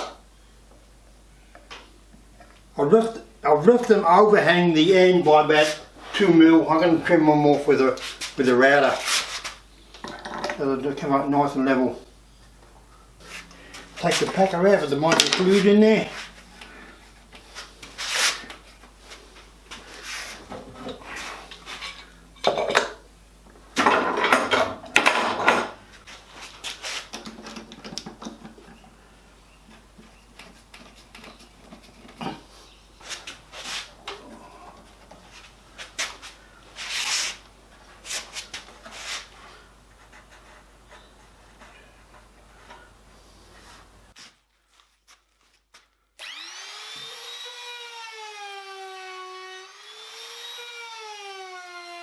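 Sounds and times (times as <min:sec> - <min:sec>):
wooden pieces and tools clattering: 0:10.0 - 0:10.6, 0:15.1 - 0:15.7, 0:20.5 - 0:23.0, 0:23.8 - 0:25.8, 0:27.0 - 0:28.9.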